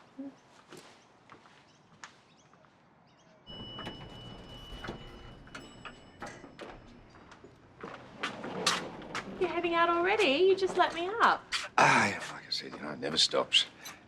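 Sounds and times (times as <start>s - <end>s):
door clicks and knocks: 3.5s - 7.6s.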